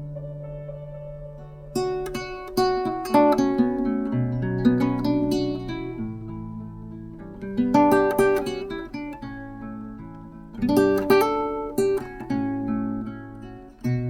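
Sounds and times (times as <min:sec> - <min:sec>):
low sustained bass notes: 0:00.0 - 0:07.8
acoustic guitar plucked and strummed: 0:00.0 - 0:14.0.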